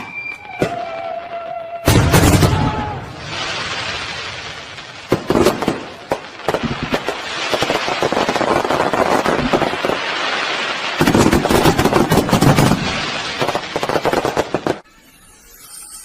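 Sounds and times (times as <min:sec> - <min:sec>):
firecracker bangs: 0:00.0 - 0:01.1, 0:01.8 - 0:10.0
fireworks crackling: 0:00.0 - 0:16.0
firework hiss: 0:02.0 - 0:14.8.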